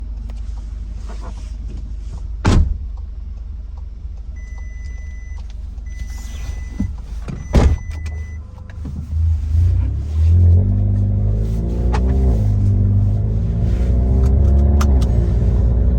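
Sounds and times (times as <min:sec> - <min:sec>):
car engine idling: 0:00.0 - 0:15.9
long electronic beeps: 0:04.4 - 0:08.5.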